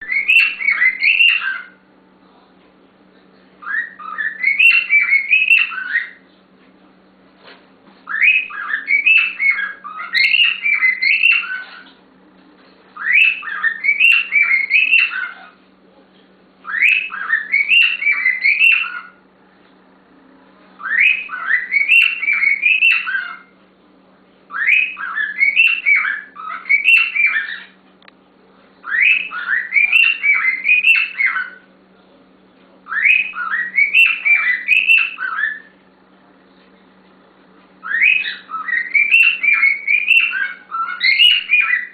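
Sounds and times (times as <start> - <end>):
bird warbling whistled notes: 37.8 - 41.9.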